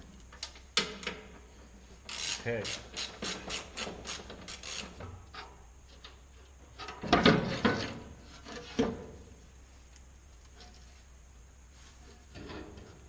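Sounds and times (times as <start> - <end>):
ratchet wrench clicking: 2.1 - 5.0.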